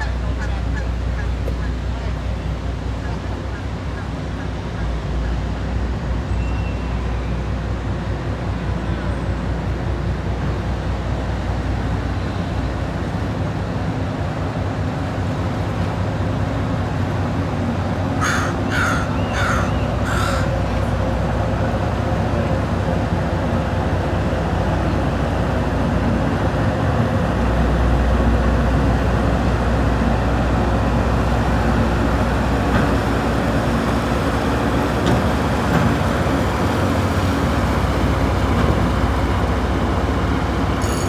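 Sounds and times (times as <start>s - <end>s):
crow cawing: 18.2s - 20.6s.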